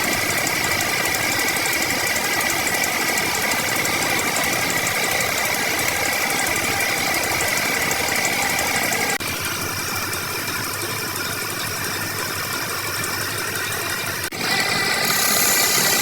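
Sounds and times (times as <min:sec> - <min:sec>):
woodworking machine whining: 0:00.0 - 0:16.0.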